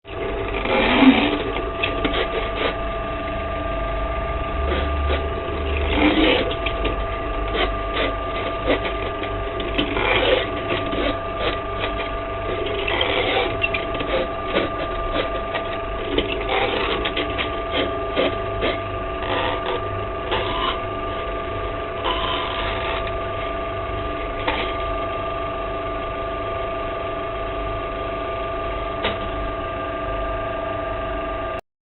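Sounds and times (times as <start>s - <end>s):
motor whining: 0.1s - 25.1s.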